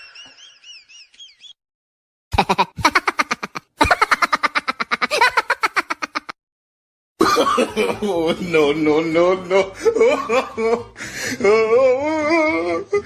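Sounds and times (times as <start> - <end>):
rapid cackling laughter: 2.4 - 6.4.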